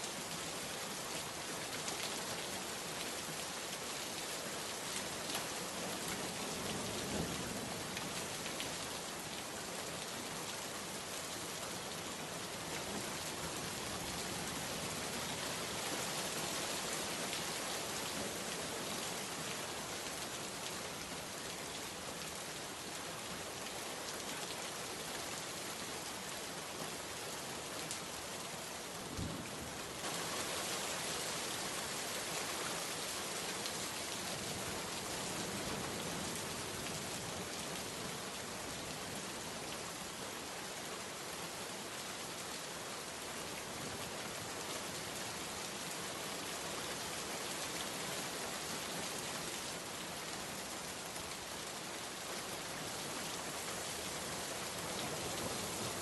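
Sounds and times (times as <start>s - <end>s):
heavy rain falling: 0.0s - 24.7s, 25.5s - 56.0s.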